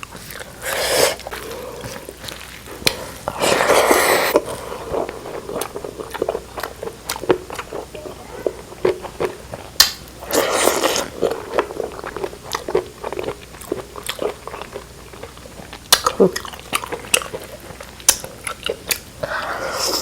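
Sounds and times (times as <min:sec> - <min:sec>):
chewing and biting food: 0:00.0 - 0:20.0
wet mouth clicks and smacks: 0:09.8 - 0:10.0.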